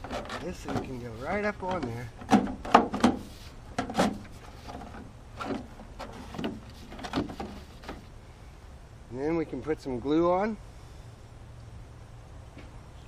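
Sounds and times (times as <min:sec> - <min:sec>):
plastic pipe knocking and scraping: 0:00.0 - 0:08.1.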